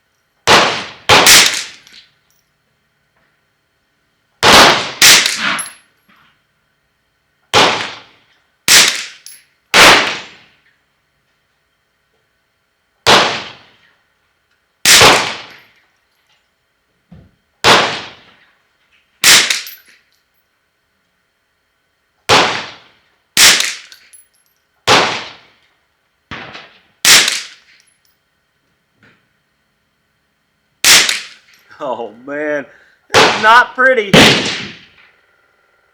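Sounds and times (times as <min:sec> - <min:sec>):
rifle shots cracking: 0:00.5 - 0:01.8, 0:04.4 - 0:05.7, 0:07.5 - 0:08.1, 0:08.7 - 0:09.2, 0:09.8 - 0:10.4, 0:13.1 - 0:13.7, 0:14.9 - 0:15.6, 0:17.6 - 0:18.3, 0:19.2 - 0:19.8, 0:22.3 - 0:23.9, 0:24.9 - 0:25.5, 0:26.3 - 0:27.7, 0:30.8 - 0:31.5, 0:33.1 - 0:35.2.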